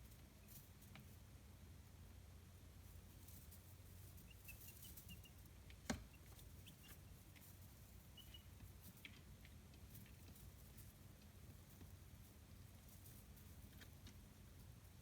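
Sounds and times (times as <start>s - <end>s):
chicks peeping: 3.0s - 15.0s.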